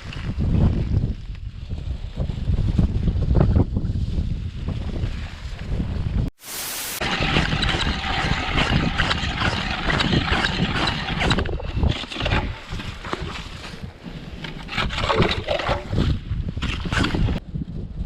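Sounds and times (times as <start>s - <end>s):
wind buffeting microphone: 0.0s - 6.3s, 7.0s - 18.0s.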